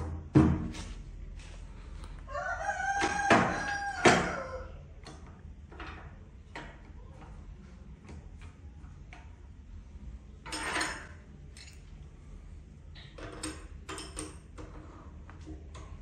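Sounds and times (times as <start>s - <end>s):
knocks and clinks of hard objects: 10.4s - 11.9s.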